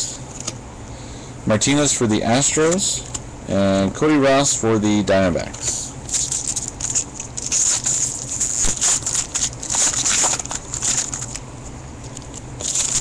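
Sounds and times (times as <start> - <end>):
foil wrapper tearing and crinkling: 6.1 - 11.4, 12.2 - 13.0.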